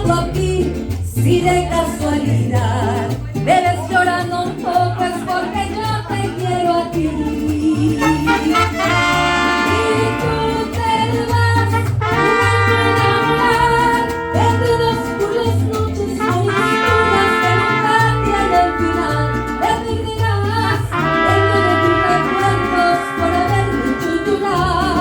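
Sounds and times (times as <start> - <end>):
pulsing bass line: 0.0 - 25.0
trumpets playing long phrases: 8.0 - 10.7, 11.7 - 15.6, 16.2 - 19.9, 20.7 - 24.8.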